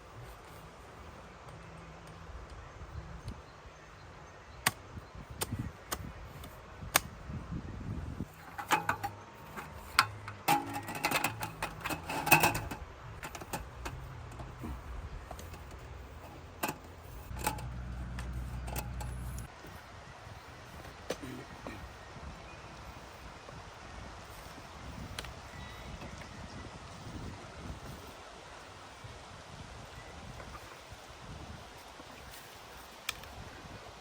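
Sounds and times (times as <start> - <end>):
low rumble: 16.9 - 19.5.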